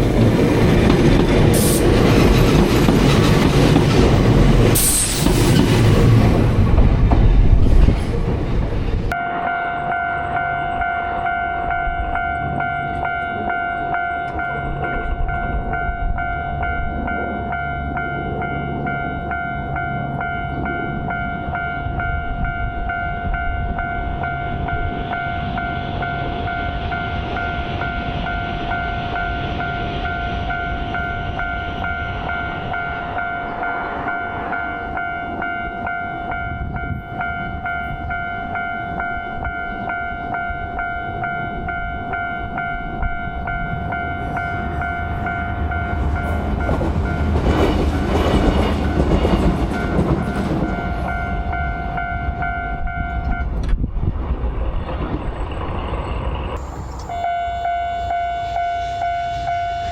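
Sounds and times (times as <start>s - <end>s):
train passing: 0.0s - 59.9s
level-crossing alarm ringing: 9.1s - 53.4s, 56.6s - 59.9s.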